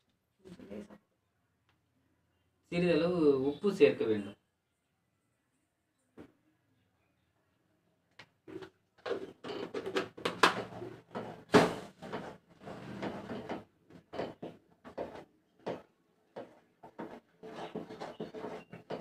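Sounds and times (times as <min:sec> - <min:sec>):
ladle scraping a pot: 0:10.7 - 0:15.8, 0:16.4 - 0:19.0.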